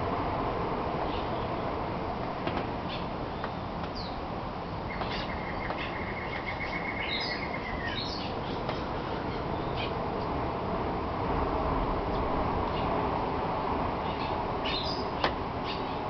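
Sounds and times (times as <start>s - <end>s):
birds chirping: 2.8s - 10.0s, 14.0s - 16.0s
bird trilling: 4.9s - 9.9s.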